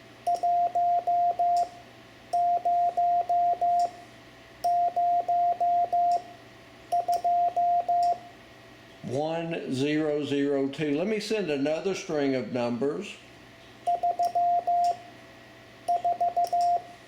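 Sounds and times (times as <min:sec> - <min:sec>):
morse code beeps: 0:00.3 - 0:01.7, 0:02.4 - 0:03.9, 0:04.6 - 0:06.3, 0:06.9 - 0:08.2, 0:13.9 - 0:15.0, 0:15.9 - 0:16.9.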